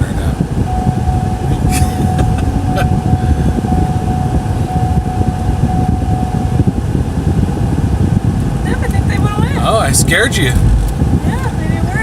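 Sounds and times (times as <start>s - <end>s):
vehicle engine rumble: 0.0s - 12.0s
thin steady whine: 0.6s - 9.6s.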